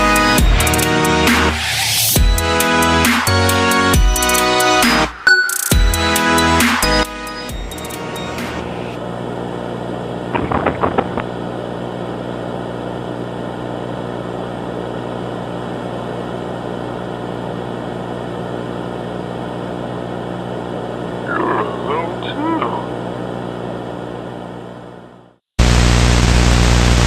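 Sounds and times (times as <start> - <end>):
electrical hum: 9.0 - 27.0.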